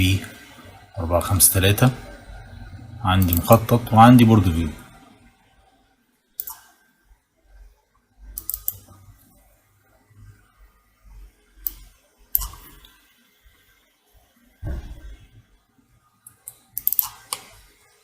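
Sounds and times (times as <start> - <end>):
computer mouse clicks: 6.4 - 6.8, 8.3 - 9.0, 11.6 - 13.0, 16.2 - 17.6.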